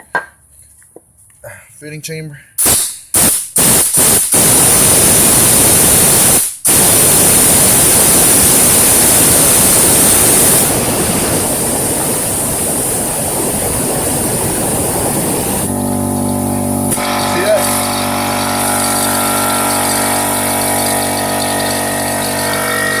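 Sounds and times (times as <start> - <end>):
compressed air hissing: 2.6 - 23.0
motor hum: 8.6 - 23.0.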